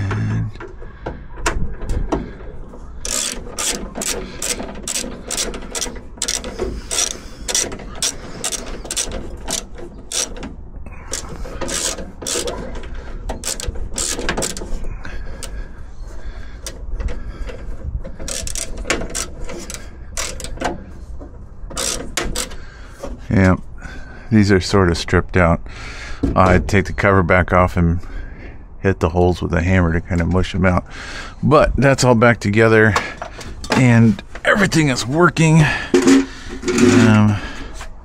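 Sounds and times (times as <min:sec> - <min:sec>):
ratcheting screwdriver clicking: 0:03.0 - 0:10.4, 0:11.1 - 0:12.5, 0:13.4 - 0:14.7, 0:18.3 - 0:20.6, 0:21.8 - 0:22.6.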